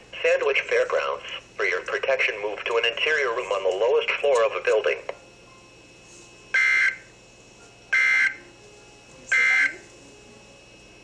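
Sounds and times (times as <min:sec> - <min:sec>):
two-tone digital data bursts: 0:09.3 - 0:09.8.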